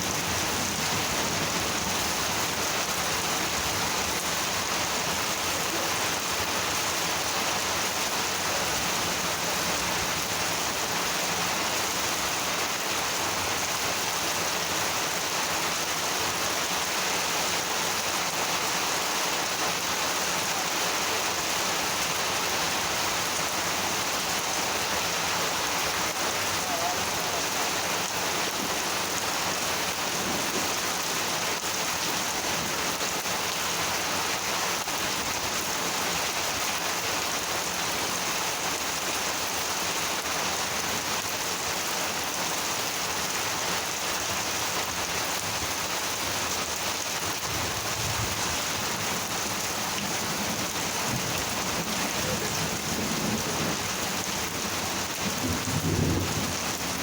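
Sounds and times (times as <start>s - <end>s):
rain falling steadily: 0.0s - 57.0s
low rumbles of thunder: 55.2s - 56.8s.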